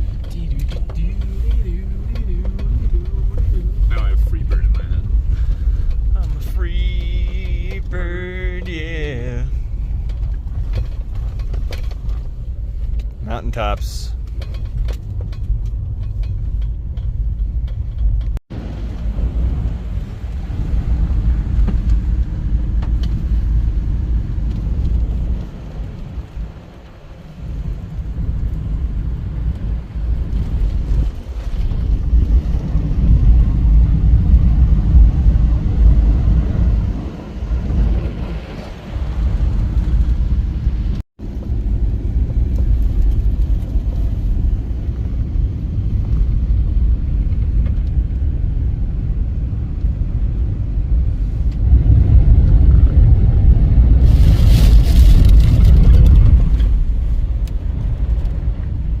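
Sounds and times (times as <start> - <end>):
road and engine rumble: 0.0 - 59.0.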